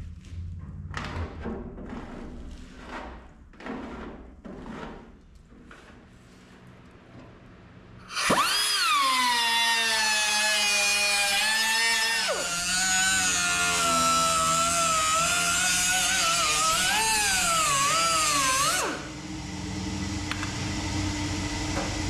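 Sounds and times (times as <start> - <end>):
power tool whining: 8.0 - 22.0.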